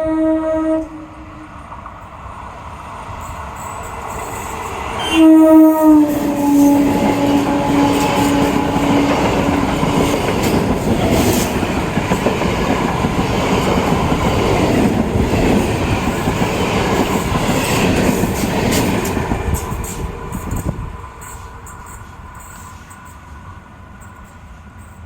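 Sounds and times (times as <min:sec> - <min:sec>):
train horn: 0:00.0 - 0:01.6, 0:04.9 - 0:10.5
train wheels clattering on rails: 0:06.0 - 0:25.0.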